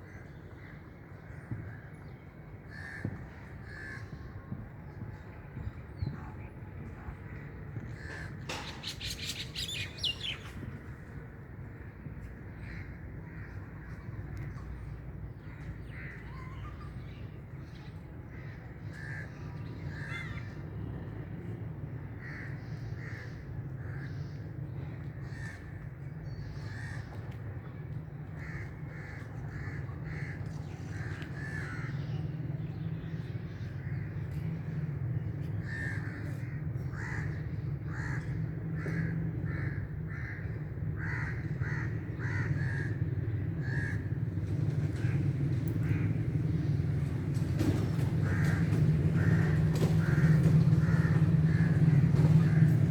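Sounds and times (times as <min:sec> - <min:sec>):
steady low rumble: 0:00.0 - 0:52.9
crows cawing: 0:41.0 - 0:43.0, 0:48.2 - 0:52.6.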